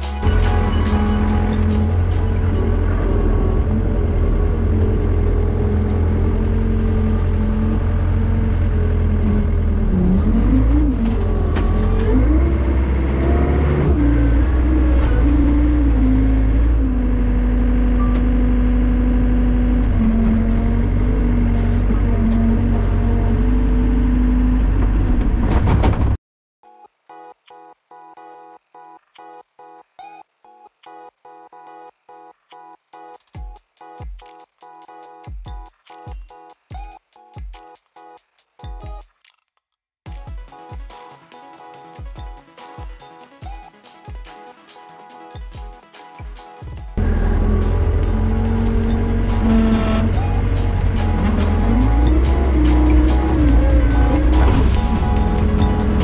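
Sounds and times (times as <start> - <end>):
skid steer engine running: 0.2 - 25.4, 47.0 - 56.0.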